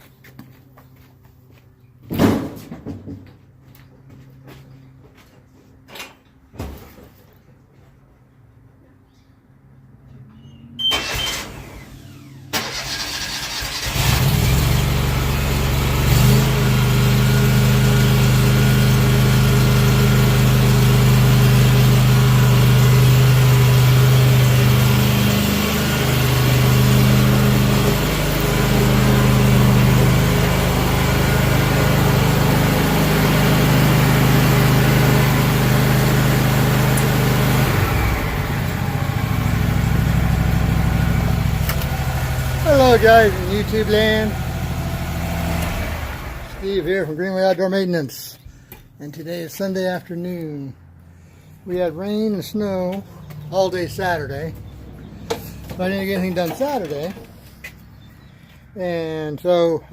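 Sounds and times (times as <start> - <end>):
mower engine cranking and running: 10.8 - 47.1, 51.8 - 58.0.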